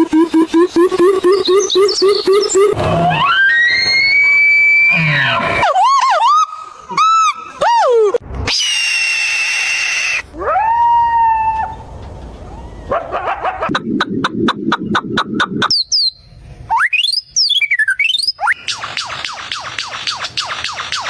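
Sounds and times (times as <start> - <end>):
bird chirps and whistles: 1.0 - 2.8, 15.6 - 21.0
downward-sliding bird chirps: 1.3 - 4.2, 13.7 - 20.9.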